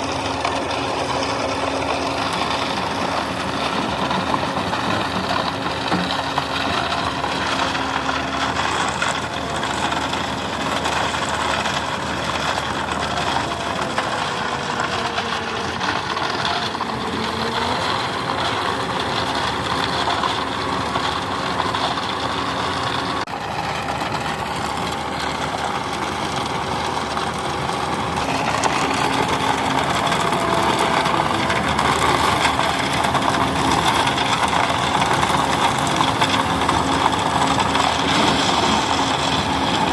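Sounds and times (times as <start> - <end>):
heavy machine engine running: 0.0 - 39.9.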